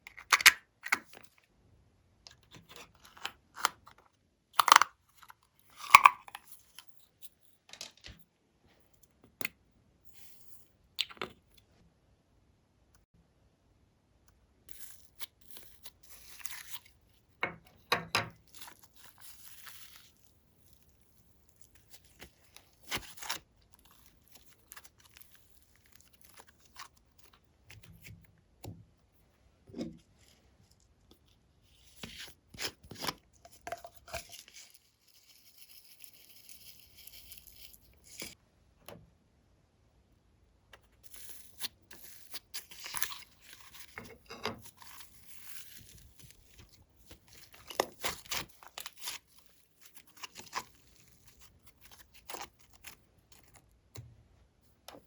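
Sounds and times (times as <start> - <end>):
slime crackling and popping: 44.6 - 53.6.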